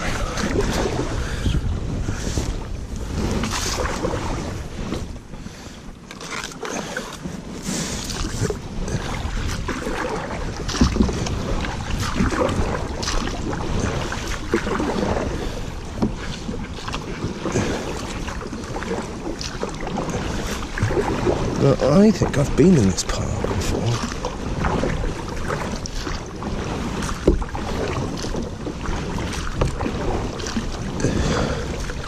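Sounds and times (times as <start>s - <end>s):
canoe paddle splashing in water: 0.0s - 32.0s
wind rumbling on microphone: 0.0s - 32.0s.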